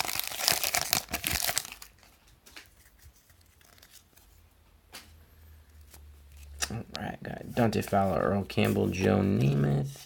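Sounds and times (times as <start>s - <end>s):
plastic wrapper tearing and crinkling: 0.0s - 4.2s.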